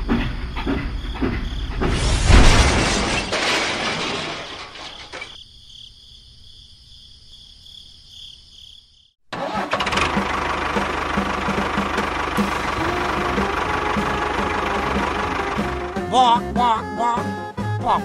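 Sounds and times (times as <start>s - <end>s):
engine running with low knock: 9.7s - 16.1s.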